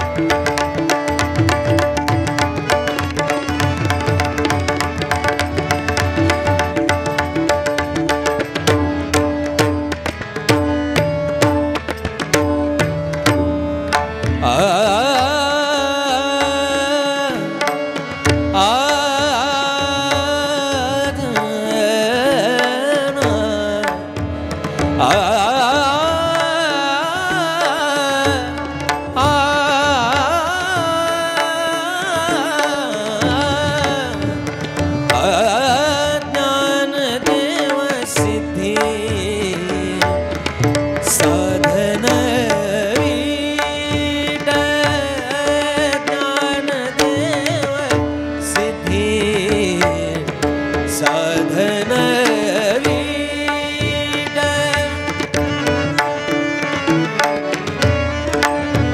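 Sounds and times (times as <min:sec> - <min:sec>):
tabla strokes: 0:00.0 - 0:58.9
person singing ornamented passage: 0:13.8 - 0:17.6, 0:18.6 - 0:24.2, 0:35.1 - 0:40.0, 0:41.2 - 0:50.3, 0:51.0 - 0:55.1.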